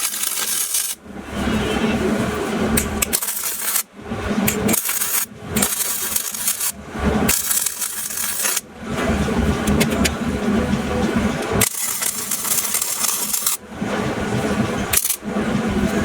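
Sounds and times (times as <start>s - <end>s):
welding arc crackling: 0.0s - 9.1s, 11.4s - 13.6s, 14.8s - 15.2s.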